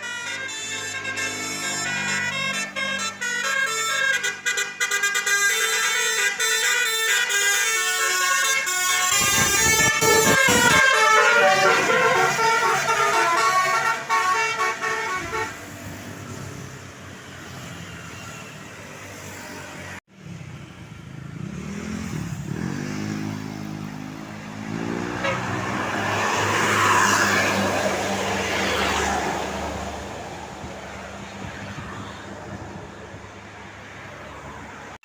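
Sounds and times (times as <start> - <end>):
multi-tone bus horn melody: 0.0 - 16.0, 24.8 - 27.8
bus road noise: 0.0 - 35.0
bus engine running: 9.3 - 16.7.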